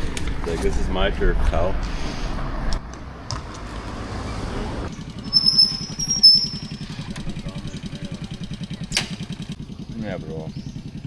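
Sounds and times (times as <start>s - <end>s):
small engine idling: 4.9s - 11.0s
high thin whistling tones: 5.2s - 7.0s.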